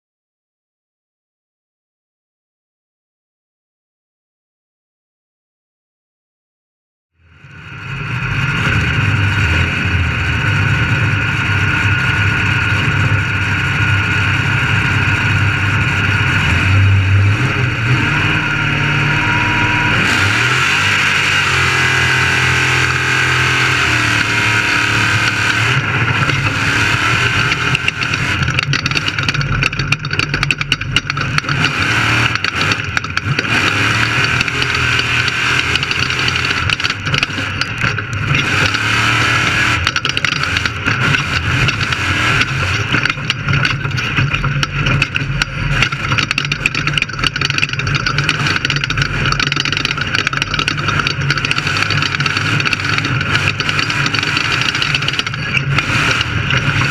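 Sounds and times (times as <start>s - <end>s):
race car engine running hard: 7.2s - 56.9s
wind and road noise: 7.2s - 56.9s
rough rattling knocks: 25.2s - 38.9s, 39.8s - 56.9s.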